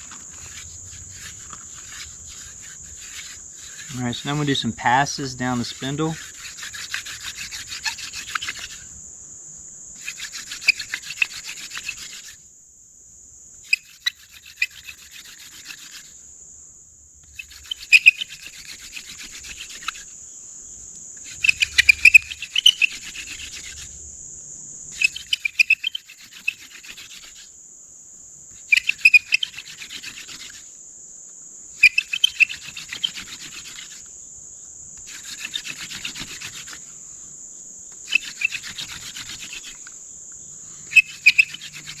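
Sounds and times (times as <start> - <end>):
sharp wood squeaks: 0.0 - 9.0, 10.0 - 12.4, 13.6 - 16.2, 17.3 - 20.1, 21.2 - 23.9, 24.9 - 27.5, 28.5 - 30.7, 31.8 - 34.1, 35.0 - 36.8, 37.9 - 40.0, 40.9 - 42.0.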